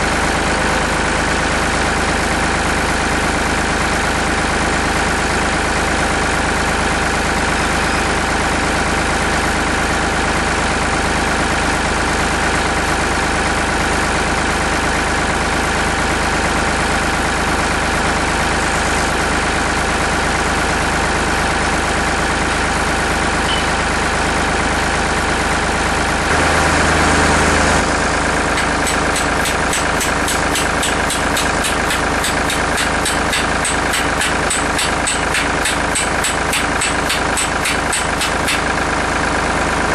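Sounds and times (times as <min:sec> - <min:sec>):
tractor engine idling: 0:00.0 - 0:39.9
fast even ticking: 0:28.5 - 0:38.7.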